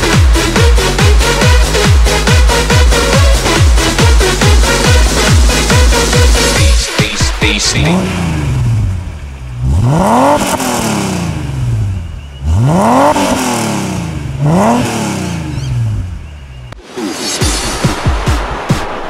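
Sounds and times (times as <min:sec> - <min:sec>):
car engine revving: 0:00.0 - 0:19.0.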